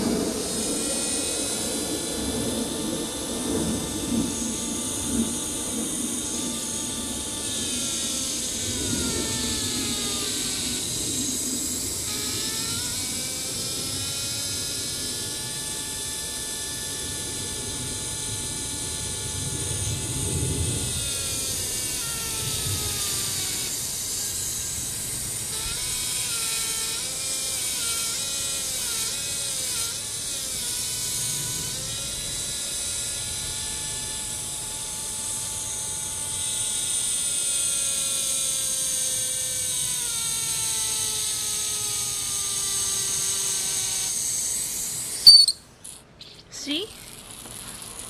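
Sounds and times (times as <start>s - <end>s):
hose wailing tone: 45.1s - 45.7s.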